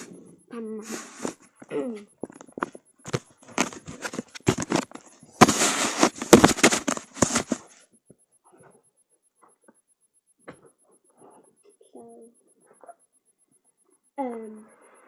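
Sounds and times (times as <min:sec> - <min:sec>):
crackling handling noise: 0:01.0 - 0:07.8.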